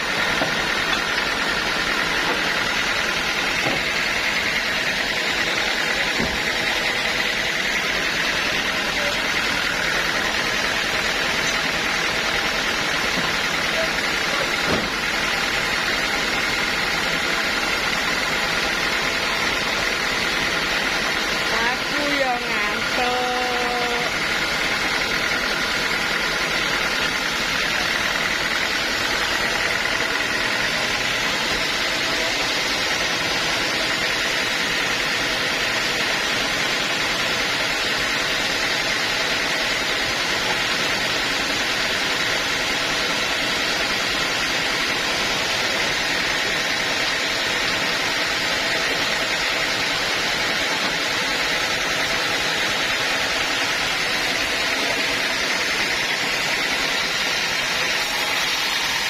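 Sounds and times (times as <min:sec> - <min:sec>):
sawmill machinery drone: 0:00.0 - 0:59.0
steady mechanical whine: 0:00.0 - 0:59.0.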